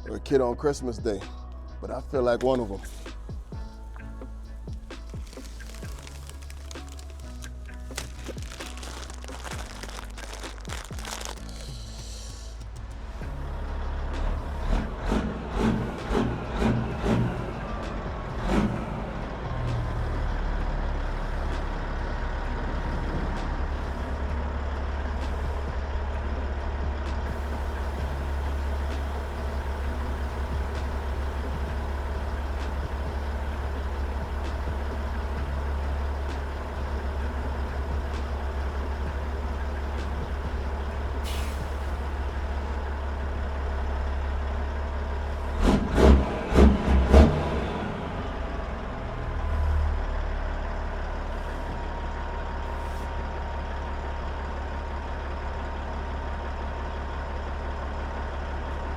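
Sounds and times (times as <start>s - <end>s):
diesel truck engine droning: 0.0s - 58.9s
air release hiss: 41.2s - 42.0s.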